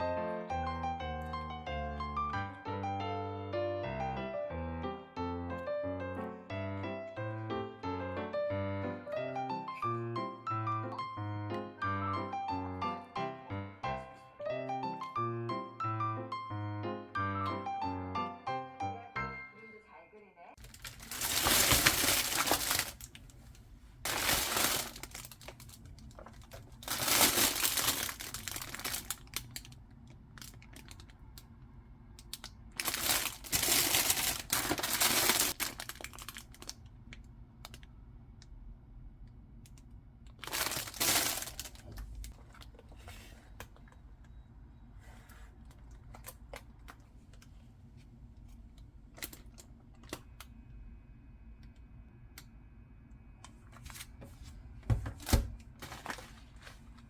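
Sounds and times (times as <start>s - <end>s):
plastic packaging crinkling: 20.6s - 31.2s, 32.2s - 36.9s, 40.4s - 42.9s, 49.1s - 50.5s, 55.2s - 57.0s.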